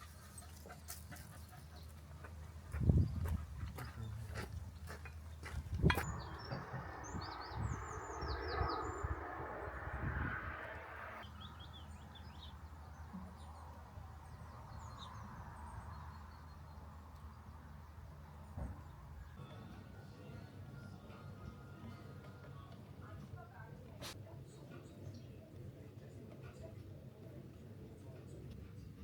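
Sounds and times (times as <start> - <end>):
small birds chirping: 0.9 - 9.8, 11.2 - 19.4
low rumble: 5.6 - 11.2
rushing noise: 5.9 - 11.2.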